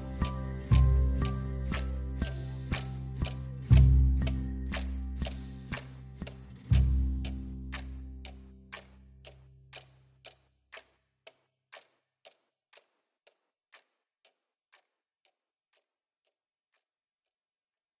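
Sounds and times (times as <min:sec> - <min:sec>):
low held musical chord: 0:00.0 - 0:05.2
faint steady ticking: 0:00.0 - 0:16.4.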